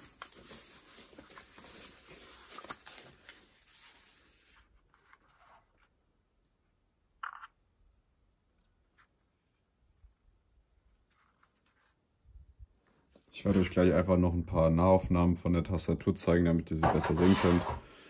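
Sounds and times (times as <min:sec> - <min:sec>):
packaging rustling: 0:00.0 - 0:05.5.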